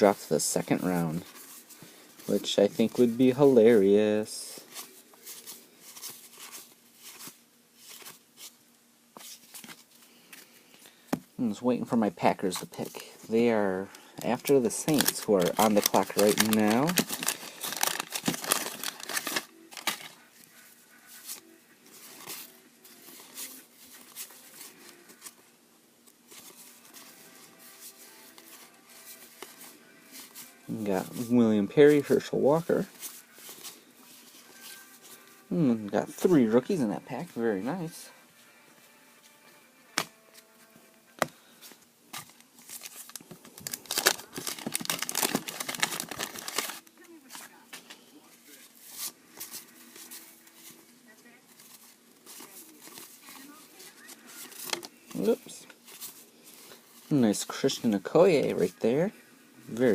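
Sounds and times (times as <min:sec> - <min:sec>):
cards rustling and clicking: 0:04.6 - 0:08.6, 0:09.2 - 0:10.5, 0:12.4 - 0:25.4, 0:26.0 - 0:35.4, 0:39.9 - 0:40.5, 0:41.1 - 0:48.0, 0:48.6 - 0:50.9, 0:51.5 - 0:57.8
wrapper crinkling: 0:14.1 - 0:25.4, 0:42.2 - 0:47.6, 0:48.6 - 0:59.0.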